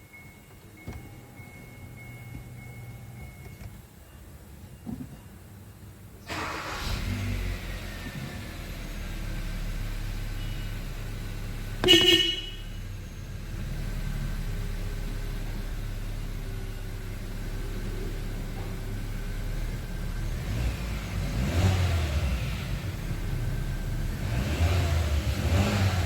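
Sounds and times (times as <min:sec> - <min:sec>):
car engine starting and idling: 0:00.0 - 0:04.1, 0:05.9 - 0:26.0
car horn toot: 0:10.4 - 0:10.8, 0:11.8 - 0:13.0.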